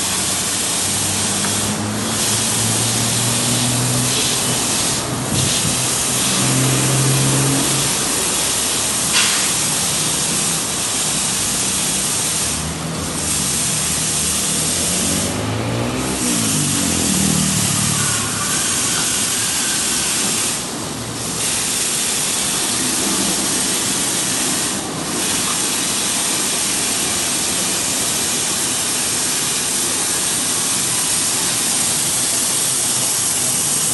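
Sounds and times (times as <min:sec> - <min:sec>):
loud hissing noise: 0:00.0 - 0:33.9.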